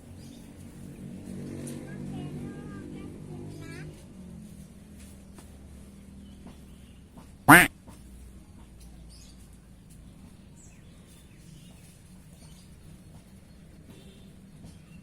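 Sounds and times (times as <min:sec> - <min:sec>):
duck quacking: 0:07.5 - 0:07.7.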